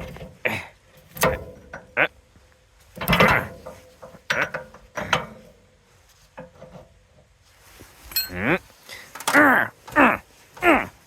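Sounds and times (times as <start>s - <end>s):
metal tools clanking and clicking: 3.0s - 5.6s, 8.1s - 8.4s.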